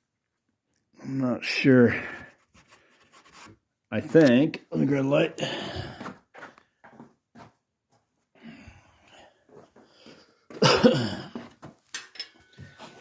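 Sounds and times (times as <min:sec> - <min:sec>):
man coughing: 0:10.5 - 0:11.5.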